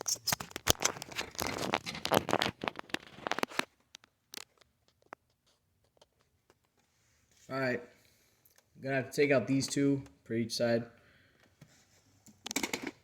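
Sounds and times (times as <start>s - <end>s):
plastic crinkling and clicking: 0.0s - 6.8s, 12.2s - 13.0s.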